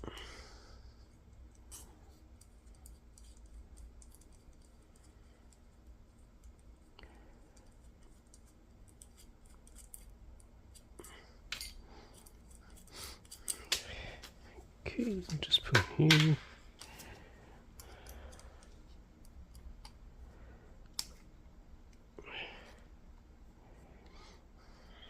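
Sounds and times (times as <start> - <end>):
low steady hum: 0.0 - 25.0
small metal parts clicking and scraping: 1.5 - 5.6, 7.6 - 13.8.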